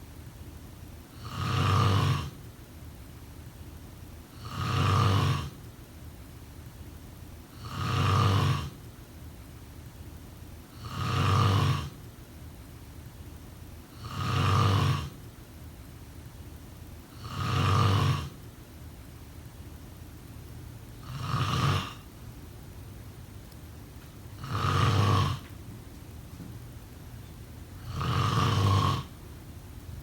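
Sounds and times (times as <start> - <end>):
faint steady hiss: 0.0 - 30.0
person snoring: 1.1 - 2.4, 4.4 - 5.6, 7.5 - 8.8, 10.8 - 12.0, 14.0 - 15.2, 17.1 - 18.4, 21.0 - 22.1, 24.4 - 25.5, 27.8 - 29.2.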